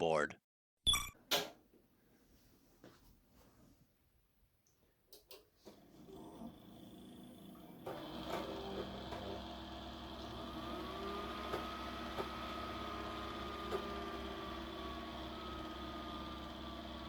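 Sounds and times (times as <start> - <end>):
computer fans humming: 7.2 - 17.0.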